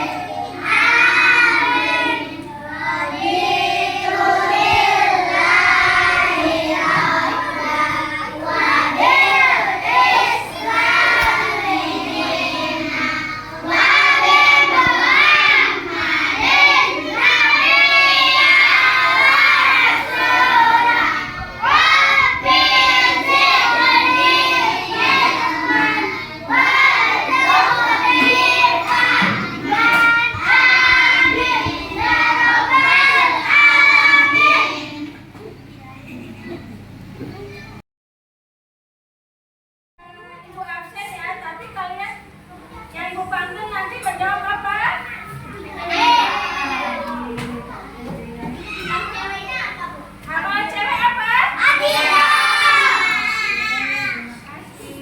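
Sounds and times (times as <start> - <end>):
children singing: 0.0 - 35.2, 45.4 - 47.4, 51.6 - 55.0.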